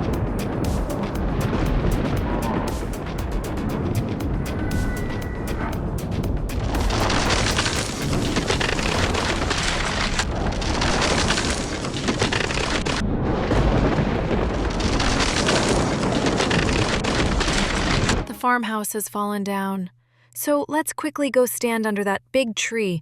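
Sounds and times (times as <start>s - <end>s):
heavy rain: 0.0s - 4.2s, 6.5s - 18.2s
deep continuous rumble: 0.0s - 18.2s.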